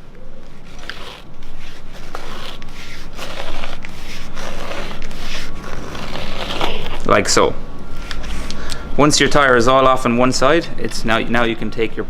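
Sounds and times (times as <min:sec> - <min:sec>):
tyre lever scraping on rim: 0:00.6 - 0:07.1.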